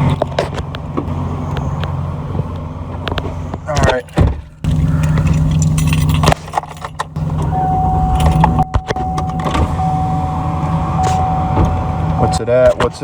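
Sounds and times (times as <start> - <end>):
truck engine running: 0.0 - 13.0
small clicks and rattles: 4.8 - 7.5
keys jangling: 5.0 - 10.0
steady high tone: 7.4 - 12.6.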